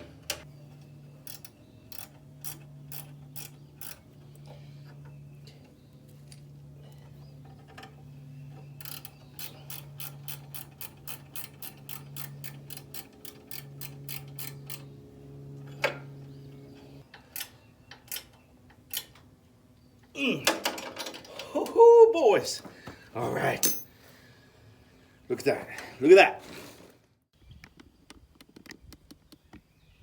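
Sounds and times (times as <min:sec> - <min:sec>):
ratchet wrench clicking: 0:01.2 - 0:04.0, 0:08.8 - 0:14.9.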